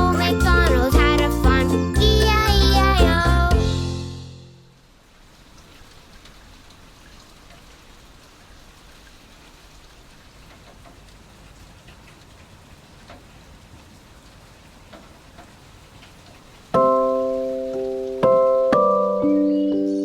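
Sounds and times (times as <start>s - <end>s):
faint rain-like hiss: 0.1s - 20.0s.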